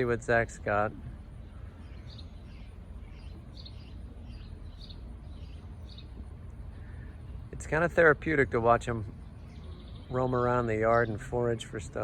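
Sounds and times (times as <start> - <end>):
low background rumble: 0.0 - 12.0
high bird chirps: 1.4 - 7.5, 9.2 - 11.3.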